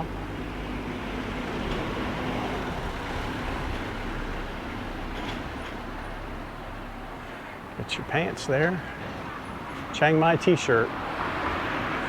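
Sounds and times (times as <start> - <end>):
vehicle engine and tyre noise: 0.0 - 12.0.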